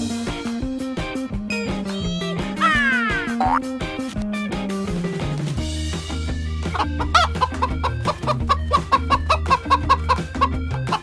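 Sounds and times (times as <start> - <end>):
background music: 0.0 - 11.0
chicken clucking: 6.7 - 11.0
chicken squawk: 6.7 - 11.0.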